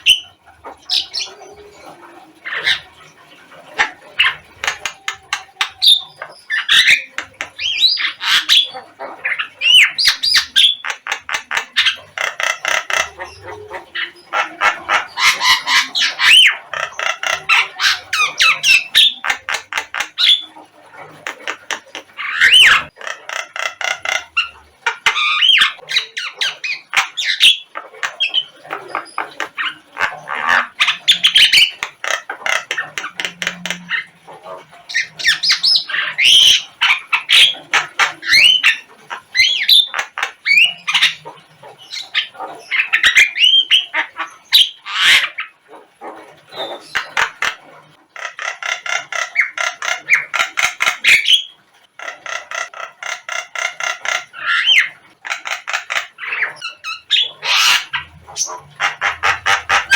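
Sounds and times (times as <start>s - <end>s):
myna bird calling: 0.0s - 59.9s.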